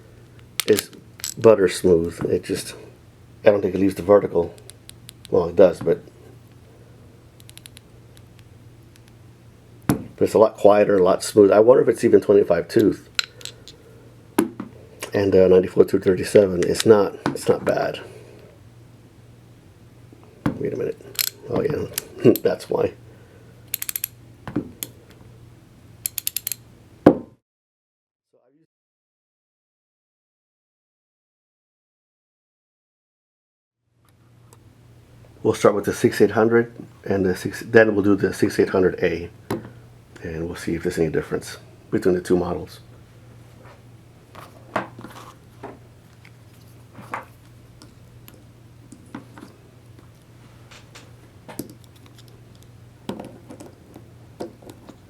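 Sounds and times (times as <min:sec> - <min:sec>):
metal hand tools clinking: 0:00.6 - 0:01.4, 0:21.1 - 0:22.5
ratchet clicking: 0:07.4 - 0:07.8, 0:21.2 - 0:22.1, 0:23.7 - 0:24.2, 0:26.0 - 0:26.6.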